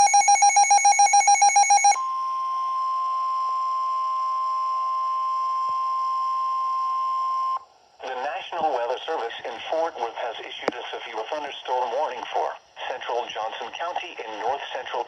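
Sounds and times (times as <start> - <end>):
rapid pulsing alert beep: 0.0 - 2.0
steady warning alarm tone: 0.0 - 2.1.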